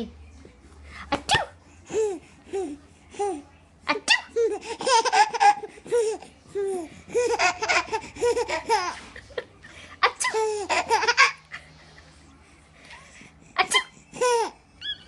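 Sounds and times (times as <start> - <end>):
baby laughing: 4.0 - 9.3, 10.0 - 11.5, 13.6 - 15.0.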